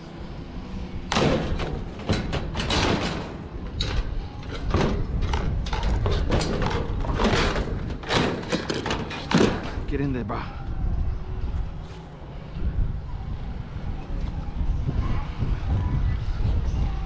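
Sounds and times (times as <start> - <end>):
scrap knocks and clatter: 1.1 - 10.0.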